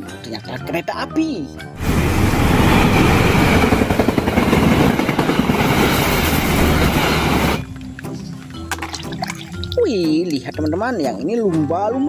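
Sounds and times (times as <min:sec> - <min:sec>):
train wheels clattering over rails: 0:01.8 - 0:07.6.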